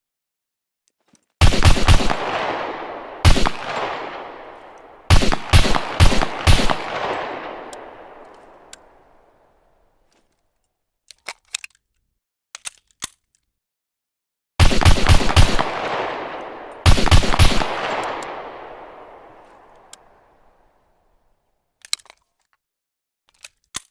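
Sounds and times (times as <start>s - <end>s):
pistol shots echoing: 1.4s - 9.5s, 14.6s - 20.6s
faint clicks: 6.9s - 9.0s.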